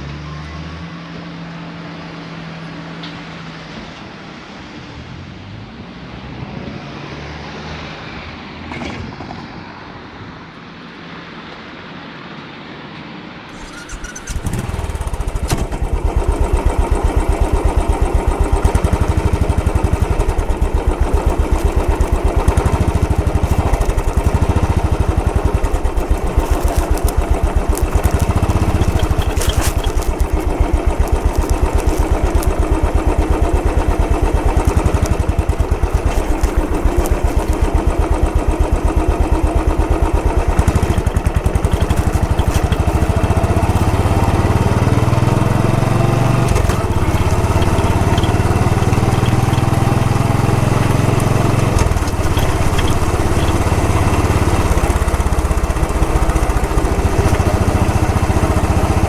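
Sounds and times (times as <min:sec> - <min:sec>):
motorcycle engine idling and revving: 0:13.5 - 0:59.0.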